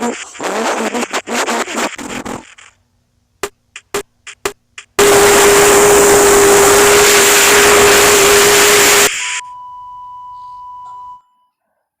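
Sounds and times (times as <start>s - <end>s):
loud static hiss with low tone: 0.0s - 9.4s.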